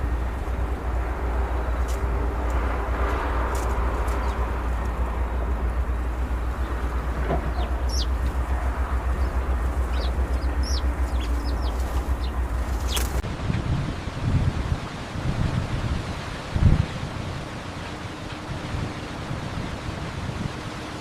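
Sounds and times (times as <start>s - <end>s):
birds chirping: 0.0s - 13.2s
gusty wind rumble: 0.0s - 21.0s
low engine rumble: 0.0s - 21.0s.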